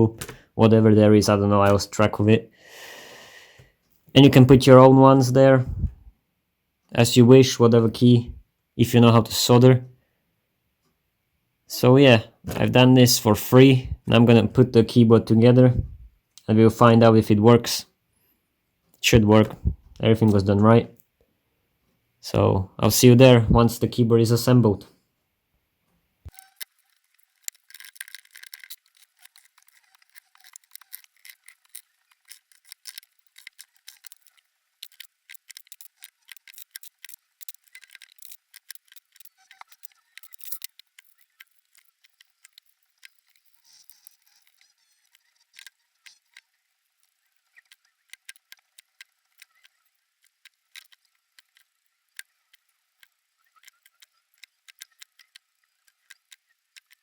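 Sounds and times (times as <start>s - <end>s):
plastic keyboard parts clicking: 0.2s - 0.4s, 26.3s - 57.0s.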